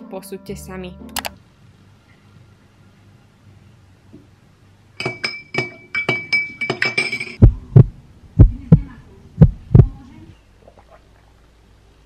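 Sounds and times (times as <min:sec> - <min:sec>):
spoon clinking against glass: 0:05.0 - 0:07.4.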